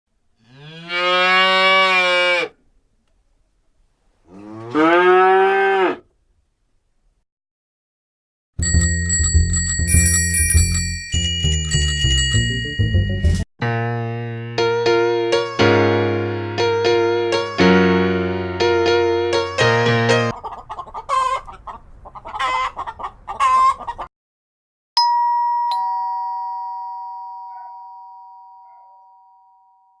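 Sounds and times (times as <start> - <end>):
cow mooing: 0.4 - 2.5, 4.3 - 6.0
two-tone ding-dong chime: 8.6 - 13.4, 25.0 - 30.0
keyboard notes: 8.6 - 20.3
chicken clucking: 20.3 - 24.1.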